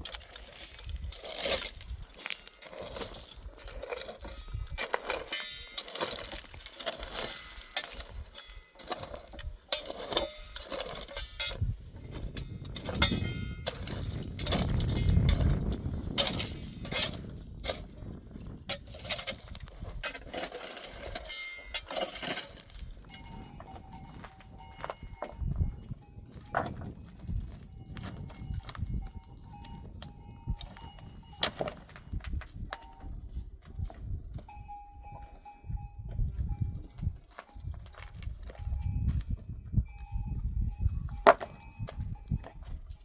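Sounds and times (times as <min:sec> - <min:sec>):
knocks and clinks: 0:00.0 - 0:17.9, 0:18.7 - 0:33.2, 0:39.9 - 0:43.0.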